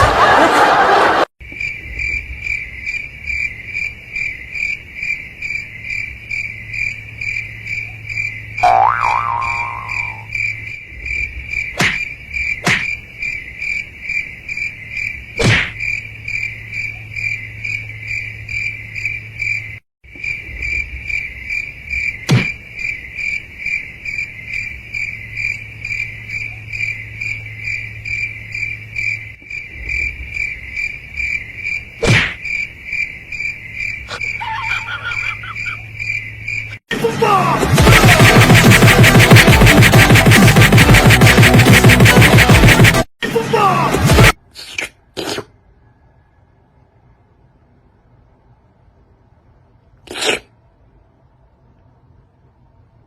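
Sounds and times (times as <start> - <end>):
crickets chirping: 1.4 - 37.4
sharp knocks: 11.8 - 13.0.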